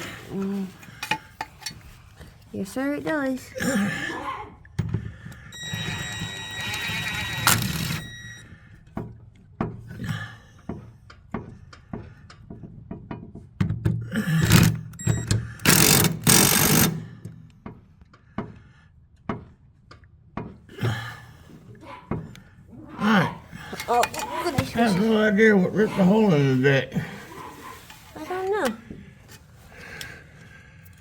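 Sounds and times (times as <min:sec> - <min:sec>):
impact driver whining and hammering: 0:04.8 - 0:09.2, 0:13.7 - 0:17.8
metal parts clanking: 0:15.6 - 0:17.0, 0:23.7 - 0:24.8.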